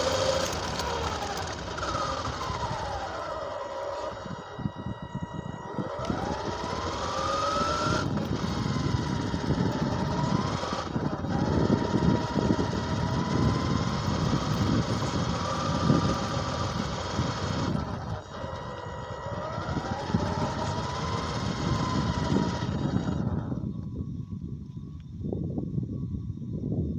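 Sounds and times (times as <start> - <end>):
tyres rumbling on ground: 0.0 - 4.4
rc car motor whine: 0.0 - 26.9.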